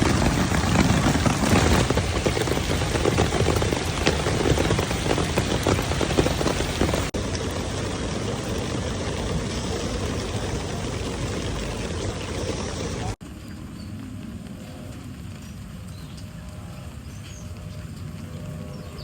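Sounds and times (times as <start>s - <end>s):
heavy rain falling: 0.0s - 13.2s.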